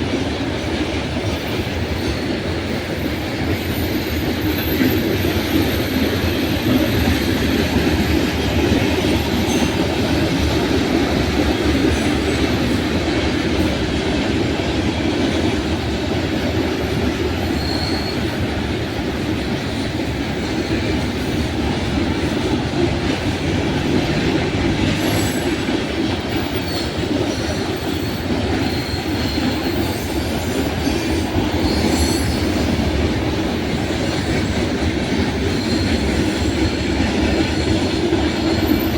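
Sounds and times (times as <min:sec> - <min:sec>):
train wheels clattering on track: 0:00.0 - 0:38.9
faint wheel squeals: 0:17.4 - 0:18.4, 0:27.8 - 0:30.0.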